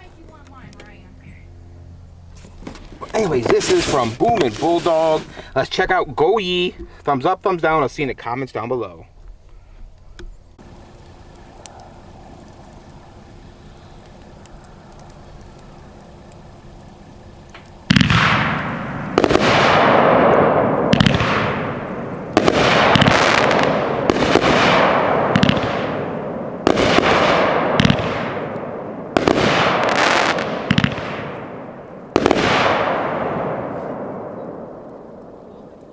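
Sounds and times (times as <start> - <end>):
firework shots with hiss: 3.1 - 5.4, 10.6 - 35.5.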